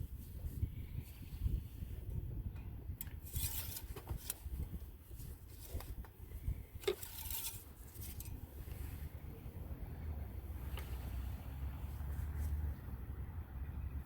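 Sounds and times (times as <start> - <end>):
wind rumble on microphone: 0.0 - 14.0
short scraping rustles: 3.2 - 6.0, 6.8 - 9.1.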